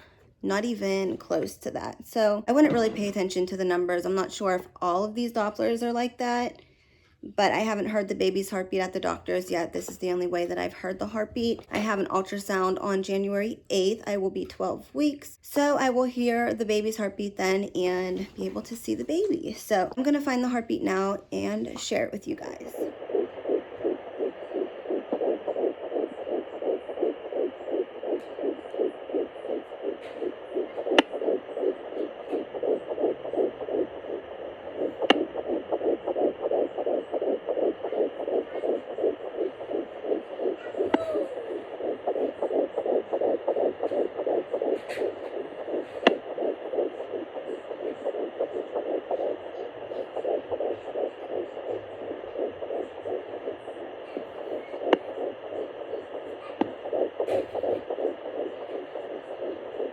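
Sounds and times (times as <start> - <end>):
fast fetal heartbeat pulsing: 0.0 - 6.6, 7.2 - 59.9
sharp clicks: 21.4 - 59.9.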